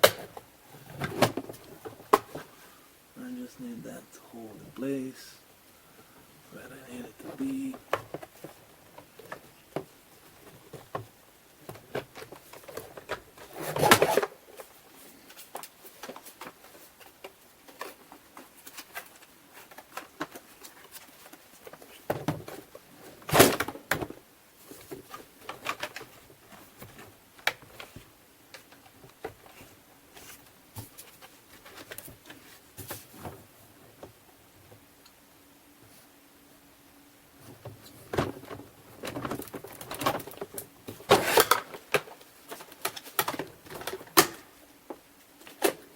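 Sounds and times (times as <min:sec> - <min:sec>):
plastic parts clattering: 0:37.7 - 0:44.5.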